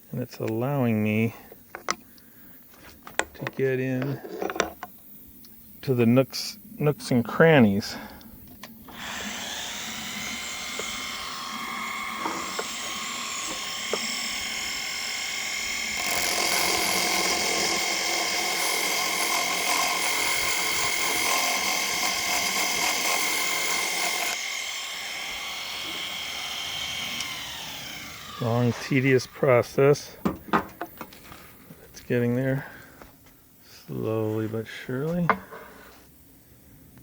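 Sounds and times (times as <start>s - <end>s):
die grinder grinding marble: 8.9s - 29.3s.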